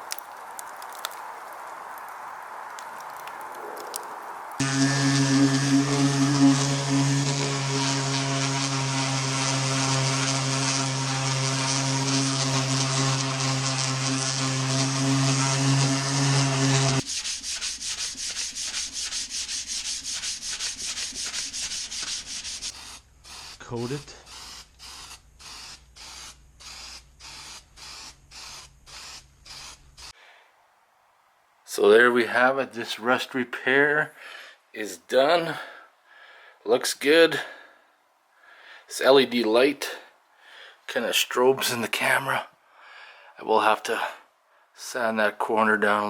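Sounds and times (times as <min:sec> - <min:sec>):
low electrical hum: 0:04.6 - 0:17.0
power sander running: 0:04.6 - 0:17.0
hand sanding strokes: 0:04.6 - 0:30.2.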